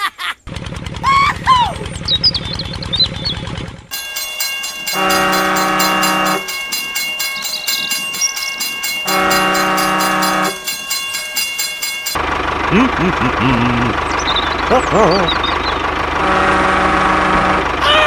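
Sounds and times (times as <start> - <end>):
train wheels clicking on rail joints: 1.9 - 12.2
train horn blasts: 4.9 - 6.6, 9.0 - 10.8, 16.2 - 18.0.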